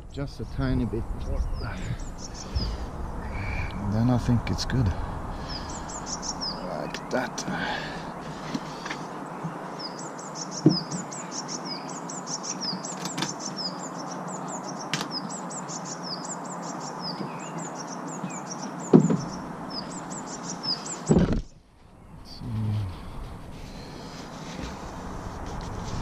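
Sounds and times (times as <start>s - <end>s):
bird chirping: 0.0s - 25.1s
background hiss: 0.0s - 26.0s
sharp knocks: 18.9s - 19.4s.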